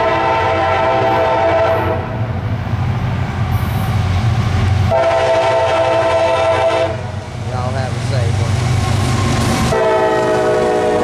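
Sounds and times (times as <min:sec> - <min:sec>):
locomotive air horn blasts: 0:00.0 - 0:02.1, 0:04.9 - 0:07.1, 0:09.7 - 0:11.0
passing train rumble: 0:00.0 - 0:11.0.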